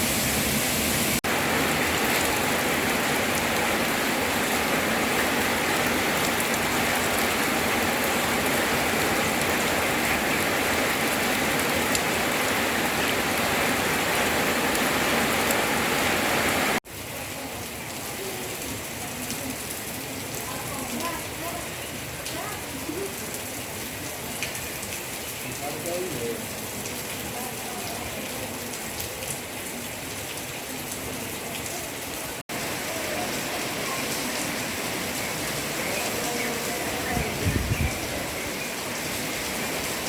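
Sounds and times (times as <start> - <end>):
steady rain falling: 0.0 - 40.0.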